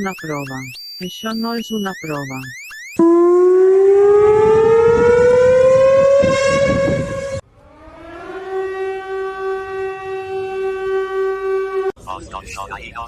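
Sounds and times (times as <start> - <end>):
civil defense siren: 2.9 - 12.0.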